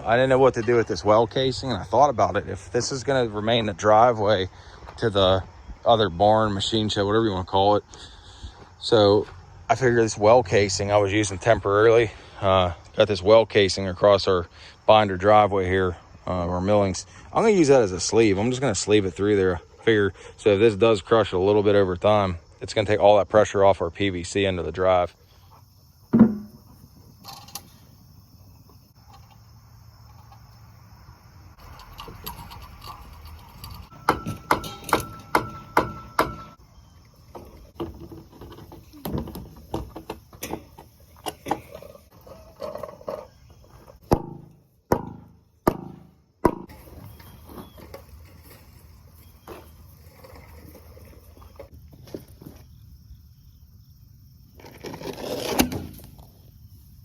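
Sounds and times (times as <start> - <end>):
sharp knocks on metal: 26.1 - 26.6, 34.0 - 36.6, 44.1 - 46.7
loud scraping noise: 54.6 - 55.8.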